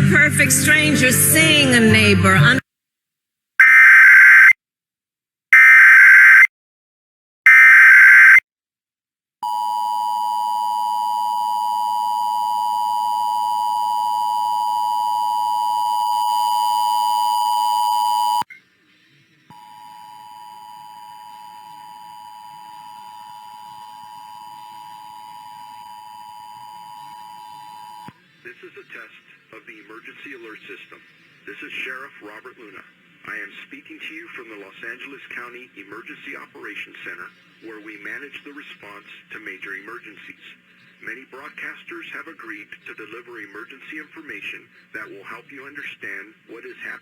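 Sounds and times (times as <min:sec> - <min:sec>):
header data tone bursts: 0:07.5 - 0:08.4, 0:09.4 - 0:18.5, 0:19.5 - 0:28.1
two-tone attention signal: 0:09.4 - 0:18.5, 0:19.5 - 0:28.1
faint steady tone: 0:09.4 - 0:18.6, 0:19.4 - 0:28.2.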